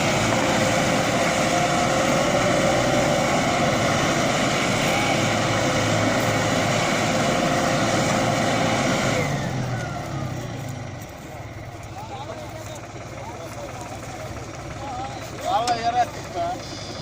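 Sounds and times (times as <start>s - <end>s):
tractor diesel engine running: 0.0s - 17.0s.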